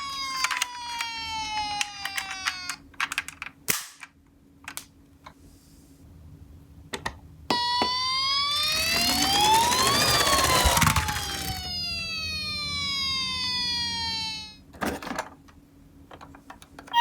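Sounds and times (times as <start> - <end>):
toy electronic siren: 0.0 - 3.2, 7.5 - 14.7
toy cars clicking and knocking: 0.2 - 3.6, 8.5 - 11.7.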